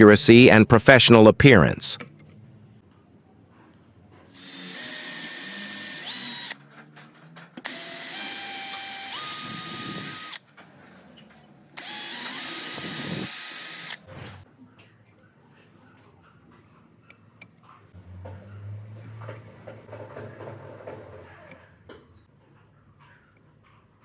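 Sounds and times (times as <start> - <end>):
power drill motor whine: 4.3 - 6.6, 7.6 - 10.4, 11.8 - 14.1.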